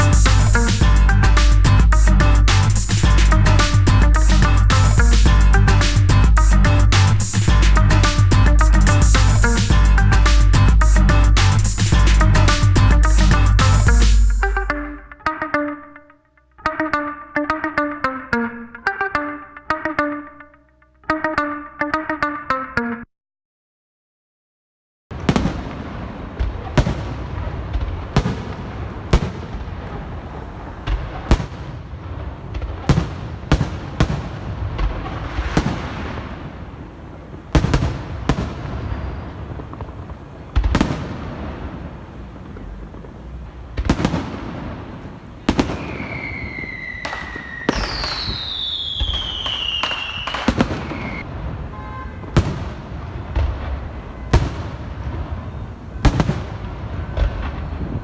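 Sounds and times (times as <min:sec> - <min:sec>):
low rumble: 0:00.0 - 0:15.1
fireworks bangs: 0:25.1 - 0:58.0
firework whistles gliding down: 0:45.5 - 0:51.3.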